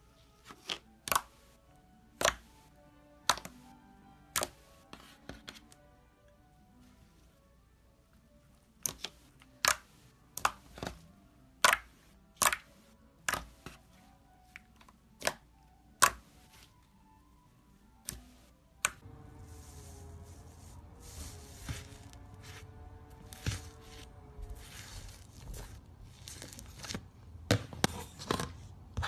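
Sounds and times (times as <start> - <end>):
faint background music: 0.0 - 29.0
slime clicking pops: 12.4 - 12.7.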